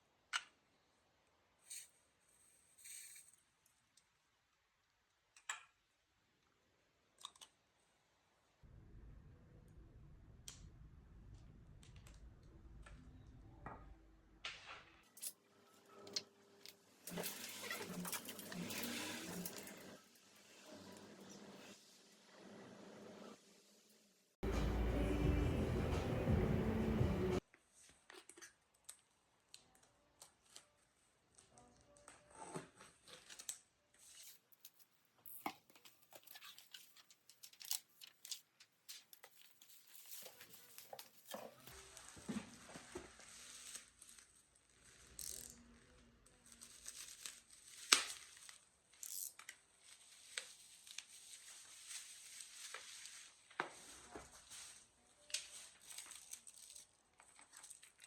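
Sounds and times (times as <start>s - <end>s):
paper and plastic crinkling: 35.5s - 58.0s.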